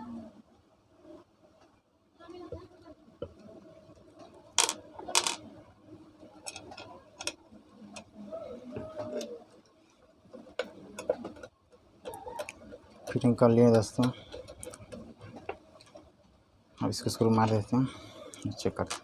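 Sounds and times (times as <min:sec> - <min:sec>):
ceiling fan parts clicking and knocking: 0:06.2 - 0:19.0.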